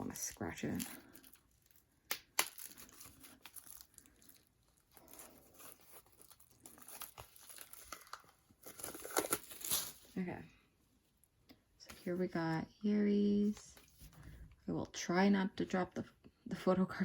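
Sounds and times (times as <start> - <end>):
packaging crinkling and rustling: 0.0 - 10.2.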